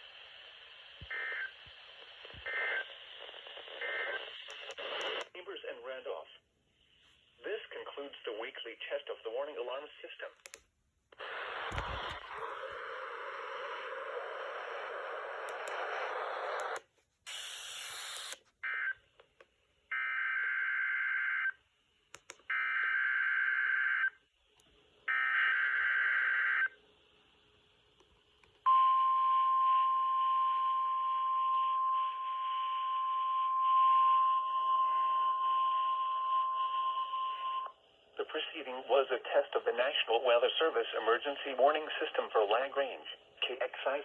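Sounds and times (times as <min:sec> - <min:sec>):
radio static hiss: 0:00.0 - 0:10.4, 0:11.2 - 0:18.4, 0:38.1 - 0:44.0.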